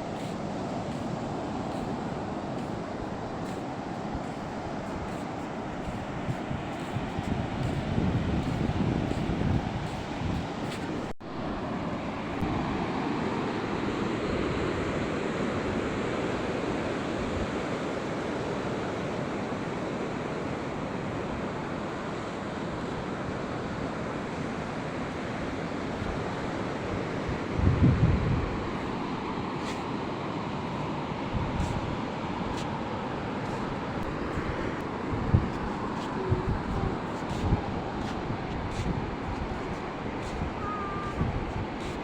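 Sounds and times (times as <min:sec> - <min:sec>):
wind buffeting microphone: 0:00.0 - 0:11.2, 0:26.0 - 0:29.3, 0:31.3 - 0:42.0
sea waves washing onto beach: 0:00.0 - 0:42.0.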